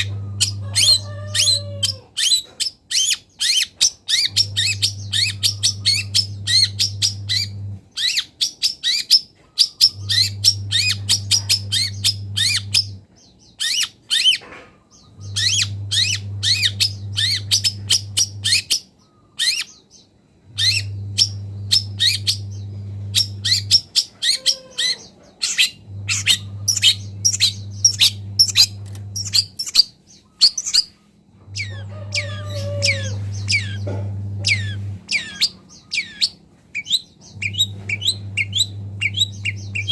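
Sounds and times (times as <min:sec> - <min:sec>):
bird chattering song: 0:00.0 - 0:39.9
low hum: 0:04.3 - 0:07.8, 0:09.9 - 0:13.1, 0:15.0 - 0:18.7, 0:20.4 - 0:24.0, 0:25.6 - 0:30.3, 0:31.0 - 0:35.9, 0:37.2 - 0:39.9.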